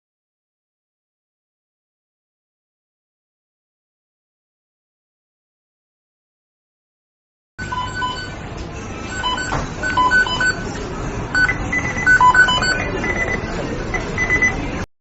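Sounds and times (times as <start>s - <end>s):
short electronic beeps: 7.6s - 8.4s, 9.0s - 10.7s, 11.3s - 14.7s
steady background noise: 7.6s - 14.9s.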